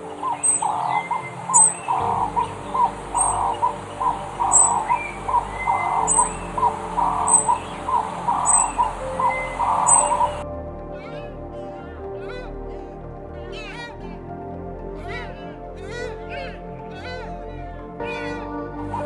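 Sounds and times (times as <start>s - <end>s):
birds chirping and calling: 0.0s - 10.4s.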